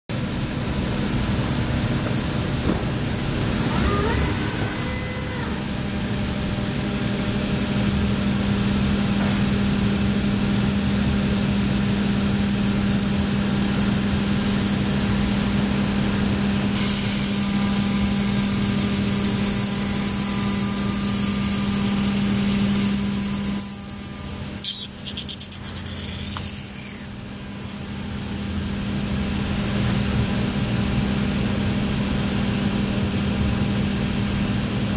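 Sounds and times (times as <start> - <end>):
milling machine humming: 0.2 - 27.6
high-pitched spindle whine: 0.6 - 8.7, 16.7 - 27.2.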